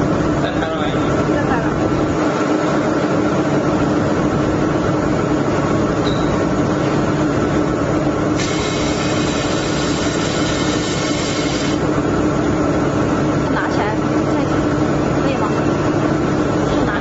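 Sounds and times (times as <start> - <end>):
welding machine hum: 7.2 - 13.6.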